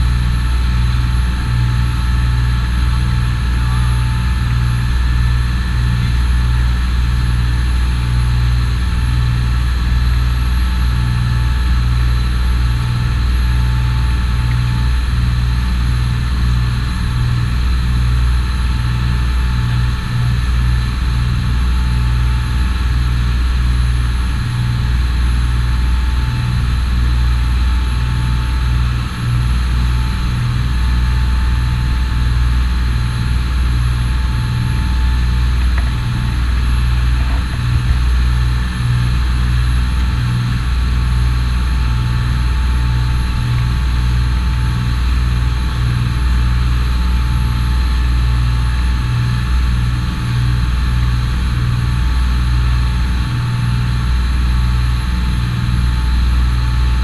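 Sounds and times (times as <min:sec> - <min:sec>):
boat engine rumbling: 0:00.0 - 0:57.0
faint steady whines: 0:00.0 - 0:57.0.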